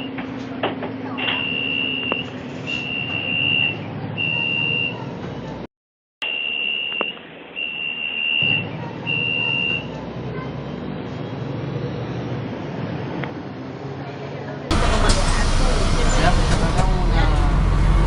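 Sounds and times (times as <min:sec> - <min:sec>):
bus engine running: 0:14.7 - 0:18.0.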